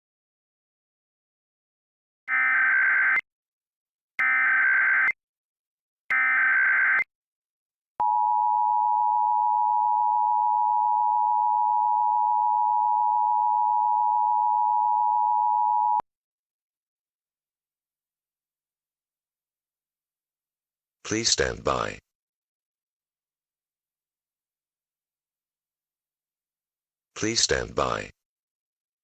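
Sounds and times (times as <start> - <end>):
long steady alert tone: 8.0 - 16.0.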